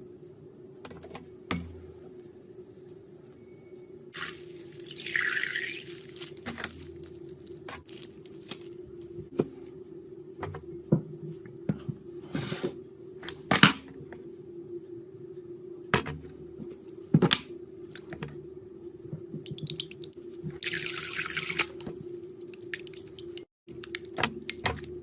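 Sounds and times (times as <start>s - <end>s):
steady low hum: 0.0s - 20.6s
liquid pouring into container: 4.2s - 6.9s, 20.6s - 21.8s
slime squishing: 4.2s - 8.6s.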